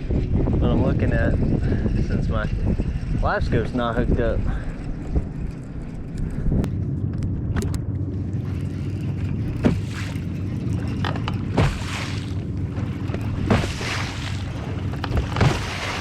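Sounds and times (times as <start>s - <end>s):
steady low rumble: 0.0s - 16.0s
water slapping against boat hull: 7.6s - 16.0s.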